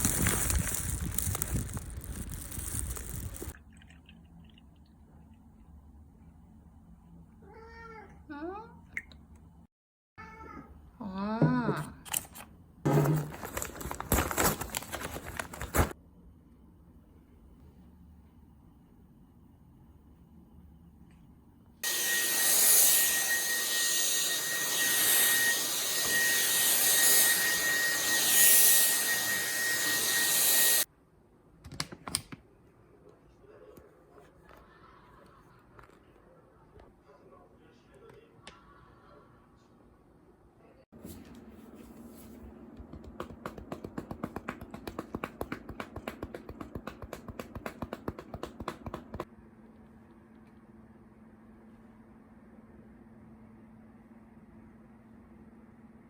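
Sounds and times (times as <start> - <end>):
electric fan appliance whining: 21.8 - 30.9.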